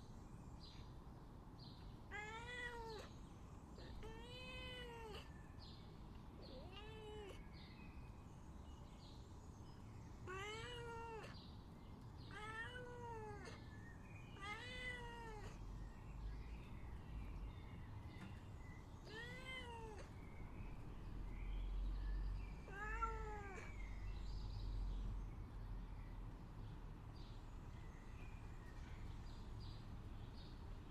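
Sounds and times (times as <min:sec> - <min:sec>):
cat meowing: 0:02.1 - 0:03.1, 0:03.8 - 0:05.3, 0:06.4 - 0:07.4, 0:10.2 - 0:11.4, 0:12.3 - 0:13.7, 0:14.4 - 0:15.6, 0:19.0 - 0:20.2, 0:22.6 - 0:23.8.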